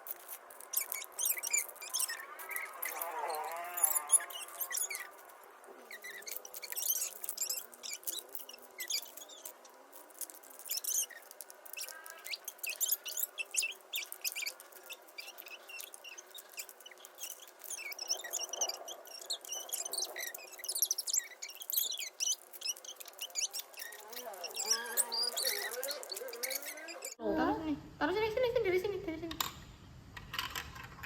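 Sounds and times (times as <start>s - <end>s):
high-pitched squeaks: 0.0s - 27.2s
plastic toy bricks clicking: 30.2s - 31.0s.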